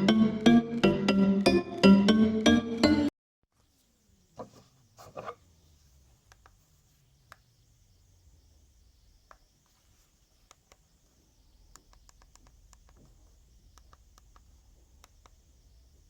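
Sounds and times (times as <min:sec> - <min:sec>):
faint low hum: 0:03.6 - 0:16.0.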